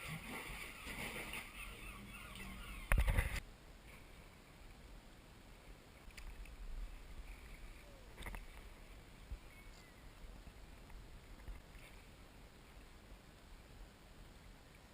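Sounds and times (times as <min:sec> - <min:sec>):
kayak paddling water: 0:00.0 - 0:04.6, 0:05.6 - 0:13.2.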